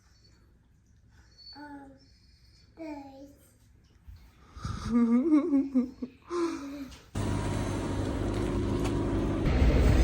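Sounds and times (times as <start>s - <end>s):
young child's voice: 1.4s - 3.6s.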